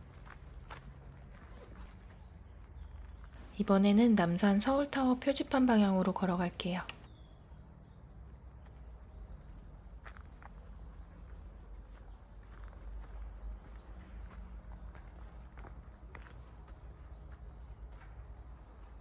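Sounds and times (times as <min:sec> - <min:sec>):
footsteps on dirt path: 0:00.0 - 0:03.5, 0:08.6 - 0:19.0
crickets trilling: 0:00.0 - 0:19.0.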